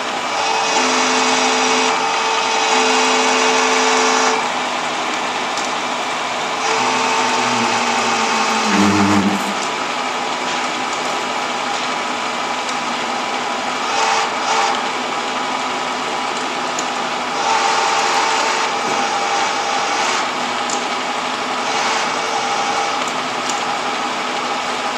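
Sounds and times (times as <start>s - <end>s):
milling machine whir: 0.0s - 20.7s
gear whine: 6.5s - 10.3s
brief low hum: 6.8s - 9.9s.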